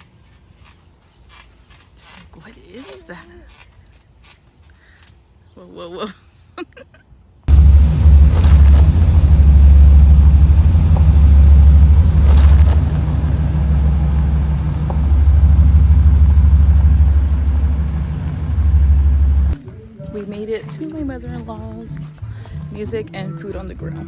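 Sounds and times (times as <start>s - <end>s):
car engine and road rumble: 7.5s - 19.6s.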